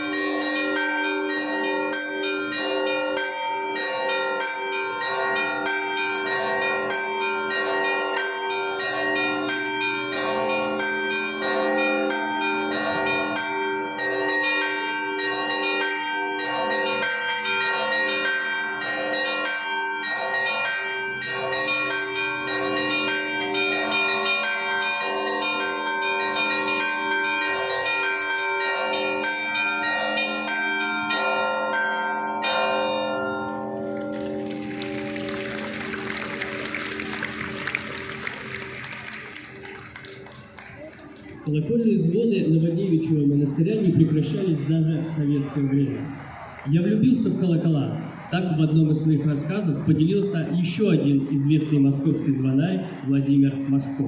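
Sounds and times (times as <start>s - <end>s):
small high bells: 0.0s - 40.6s
large bells ringing: 0.0s - 54.0s.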